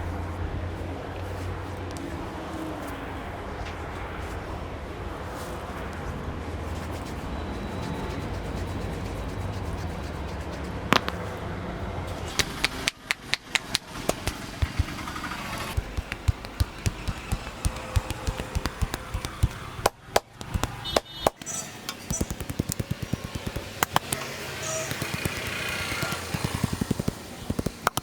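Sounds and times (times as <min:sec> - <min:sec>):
hands slapping in a massage: 0:12.3 - 0:15.1, 0:15.7 - 0:21.5, 0:22.1 - 0:28.0
sharp snap: 0:12.3 - 0:15.1, 0:15.7 - 0:28.0.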